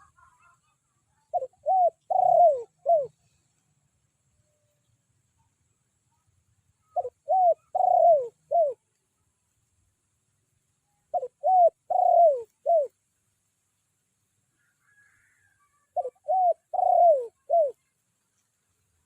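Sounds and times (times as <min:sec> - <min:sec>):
dove cooing: 0:01.2 - 0:03.2, 0:06.8 - 0:08.8, 0:11.1 - 0:13.0, 0:15.9 - 0:17.8.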